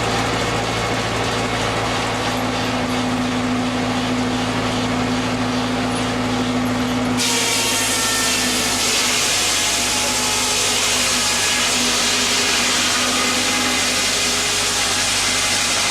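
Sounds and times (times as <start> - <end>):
sawmill machinery humming: 0.0 - 15.9.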